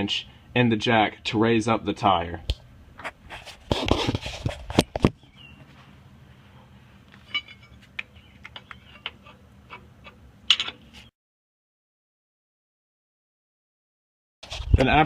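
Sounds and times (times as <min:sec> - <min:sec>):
metal clatter: 0:07.2 - 0:07.9.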